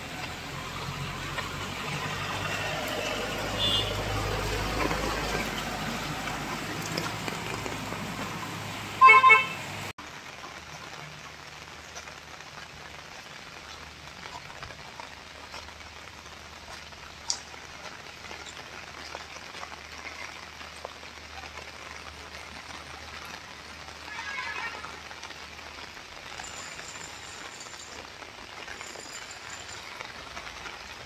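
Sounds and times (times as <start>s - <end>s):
steady rain falling: 0.0s - 31.0s
horn toot: 3.3s - 4.3s, 9.0s - 9.7s.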